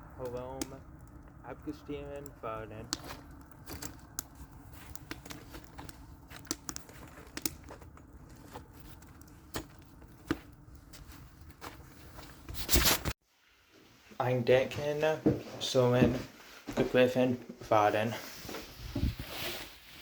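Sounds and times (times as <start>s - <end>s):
low steady hiss: 0.0s - 2.9s
campfire crackling: 0.0s - 13.1s.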